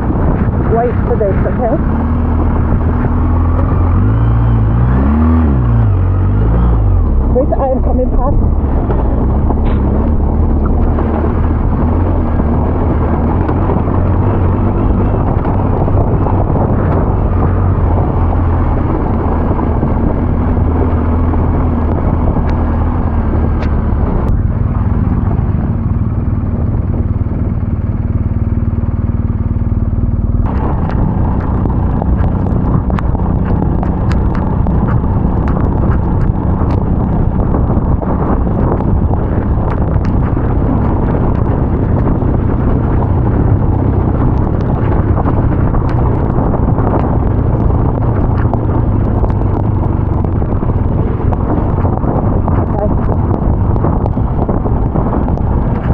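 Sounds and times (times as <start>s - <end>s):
tyre noise: 0.0s - 24.4s, 30.4s - 55.9s
heavy wind noise: 0.0s - 55.9s
motorcycle engine running: 0.0s - 55.9s
rapid sharp ticks: 30.4s - 36.9s.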